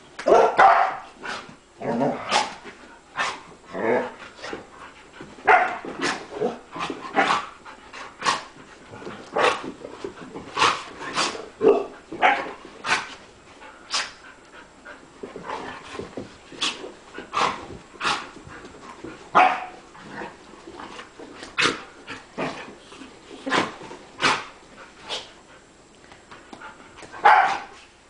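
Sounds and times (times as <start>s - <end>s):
dogs barking: 0.3s - 1.1s, 19.3s - 19.8s, 27.2s - 27.7s
dogs play sneezing: 1.2s - 4.7s, 5.6s - 8.6s, 10.5s - 14.3s, 15.4s - 18.7s, 21.4s - 25.4s.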